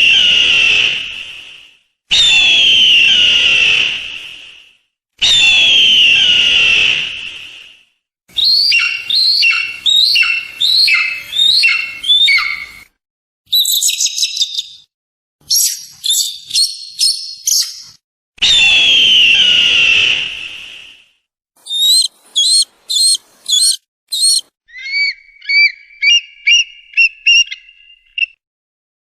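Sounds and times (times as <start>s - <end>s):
eagle cries: 8.4s - 12.8s, 21.7s - 26.7s.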